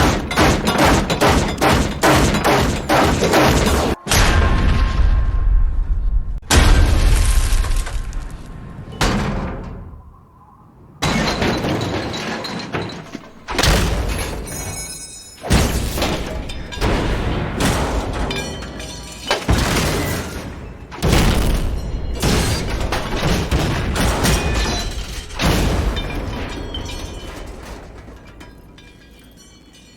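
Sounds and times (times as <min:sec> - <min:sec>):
ringing clattering metal: 0:00.0 - 0:04.0, 0:11.0 - 0:29.9
heavy metal-on-metal crashes: 0:00.0 - 0:10.2, 0:11.0 - 0:29.9.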